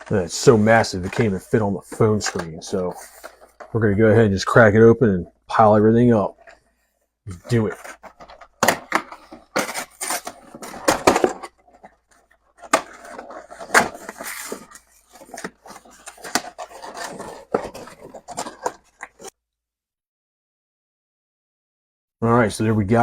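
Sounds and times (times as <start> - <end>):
unpacking cardboard box: 0.0 - 3.7, 7.5 - 19.4.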